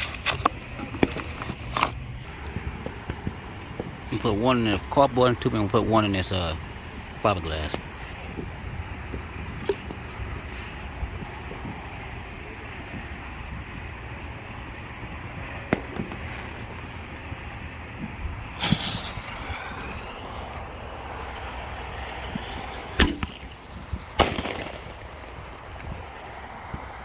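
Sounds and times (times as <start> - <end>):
mortar launch bang: 18.6 - 25.5
faint shell whistle: 18.6 - 26.9.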